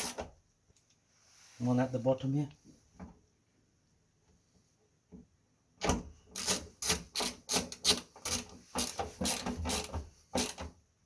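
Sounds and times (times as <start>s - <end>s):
screwdriver rasping strokes: 6.4s - 10.6s.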